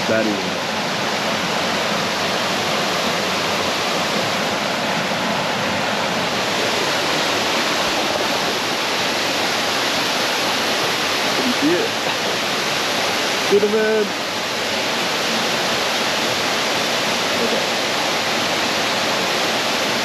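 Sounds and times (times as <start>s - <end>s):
waterfall rushing: 0.0s - 20.0s.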